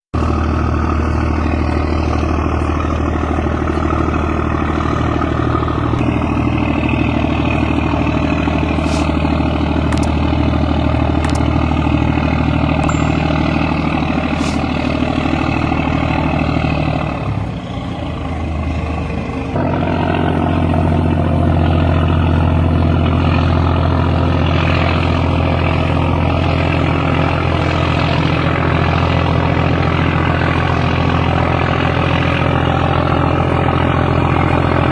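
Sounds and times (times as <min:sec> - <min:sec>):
ship engines running: 0:00.2 - 0:34.9.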